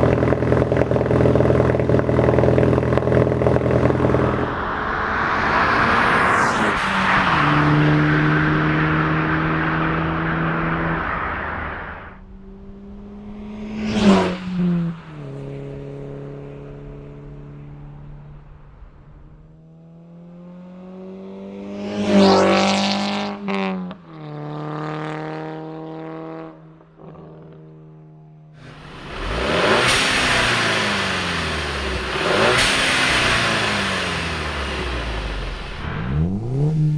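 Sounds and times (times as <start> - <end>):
car engine and exhaust running: 0.0 - 20.0, 28.6 - 36.9
rushing noise: 3.2 - 15.7, 28.6 - 36.9.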